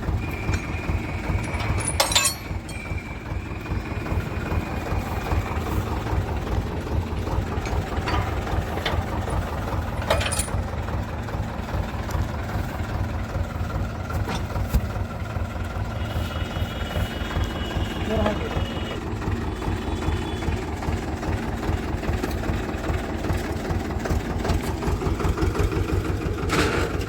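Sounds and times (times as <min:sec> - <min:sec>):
tractor diesel engine throbbing: 0:00.0 - 0:27.0
sharp clanks: 0:00.3 - 0:03.3, 0:07.4 - 0:10.7.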